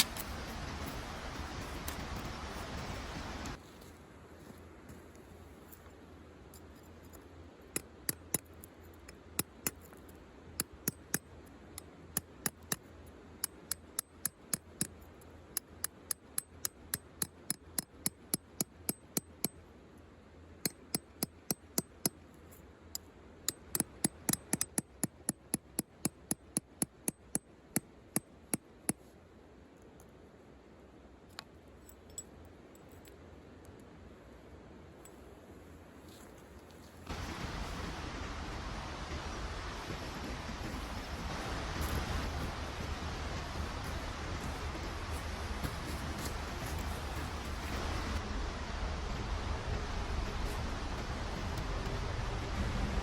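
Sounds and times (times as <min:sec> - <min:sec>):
campfire crackling: 0:37.1 - 0:53.0.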